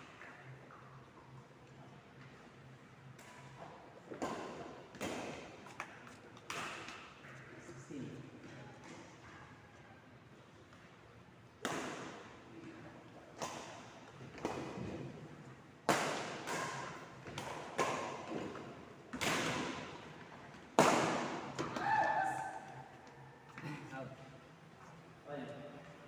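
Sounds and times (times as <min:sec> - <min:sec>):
racket hitting ball with echo: 0:04.1 - 0:07.2, 0:11.6 - 0:12.4, 0:15.8 - 0:20.1, 0:20.8 - 0:22.6.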